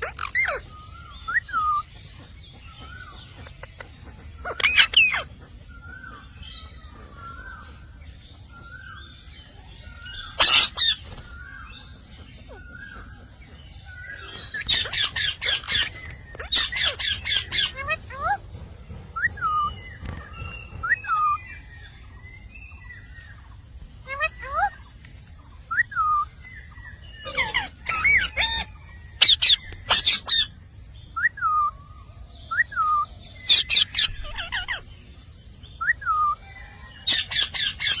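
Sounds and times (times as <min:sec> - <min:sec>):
parrot harsh squawks: 0:00.0 - 0:00.7, 0:10.4 - 0:11.0, 0:27.2 - 0:30.5, 0:32.8 - 0:34.8
parrot whistled chirps: 0:10.2 - 0:11.1, 0:25.7 - 0:26.4, 0:27.2 - 0:30.5, 0:31.1 - 0:31.8, 0:32.5 - 0:34.8, 0:35.8 - 0:36.4.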